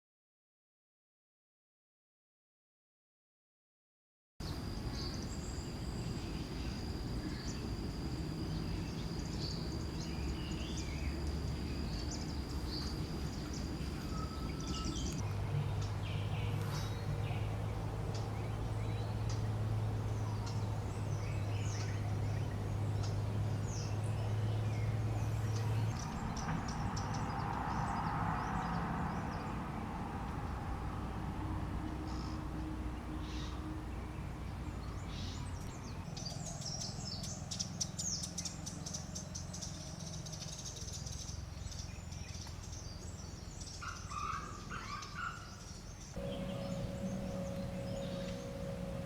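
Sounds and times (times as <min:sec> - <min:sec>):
high insect-like whine: 0:04.4 - 0:15.2, 0:46.2 - 0:49.0
low hum: 0:04.4 - 0:27.0, 0:46.2 - 0:49.0
steady rushing background: 0:46.2 - 0:49.0.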